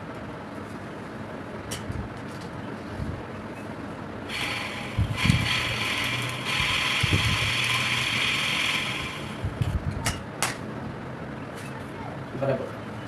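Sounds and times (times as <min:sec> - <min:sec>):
washing machine motor whirring: 0:04.3 - 0:09.8.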